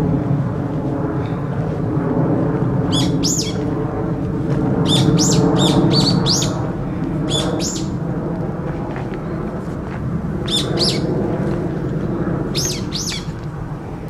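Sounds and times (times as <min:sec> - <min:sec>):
low background rumble: 0:00.0 - 0:14.0
bird calling shrilly: 0:02.9 - 0:03.6, 0:04.8 - 0:06.6, 0:07.3 - 0:08.0, 0:10.5 - 0:11.1, 0:12.5 - 0:13.4.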